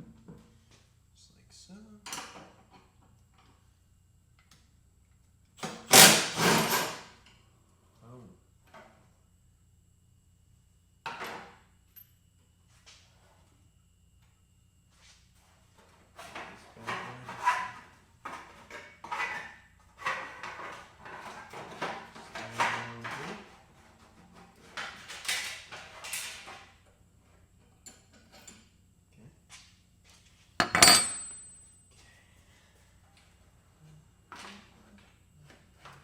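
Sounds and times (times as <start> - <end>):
hand tools clinking and clattering: 30.6 - 31.6
loud metallic clank ringing: 30.6 - 31.6.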